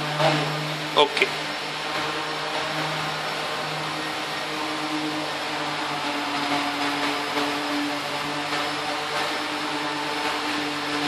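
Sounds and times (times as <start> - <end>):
machine motor whirring: 0.0 - 11.0.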